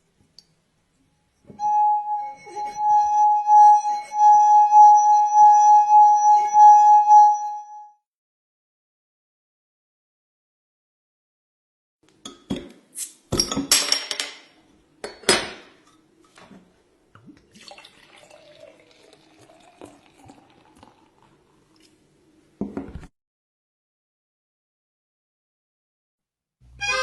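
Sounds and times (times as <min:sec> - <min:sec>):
glassware clinking and knocking: 0:13.3 - 0:15.6
drink pouring into a glass: 0:17.4 - 0:22.0.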